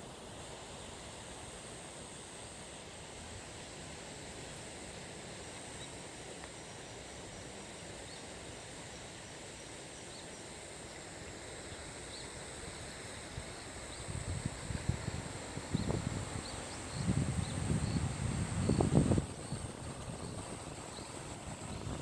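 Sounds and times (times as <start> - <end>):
even rushing hiss: 0.0 - 22.0
high insect drone: 0.1 - 22.0
wind buffeting microphone: 14.0 - 22.0.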